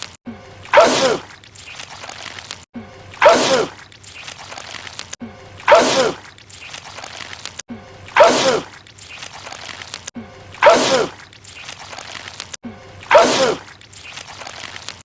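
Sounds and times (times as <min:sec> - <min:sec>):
man sneezing loudly: 0:08.2 - 0:08.7, 0:10.6 - 0:11.2, 0:13.1 - 0:13.6.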